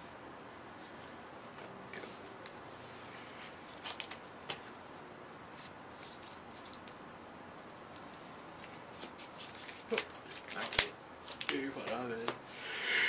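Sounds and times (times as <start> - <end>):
cards brushing and sliding: 0.4 - 12.1.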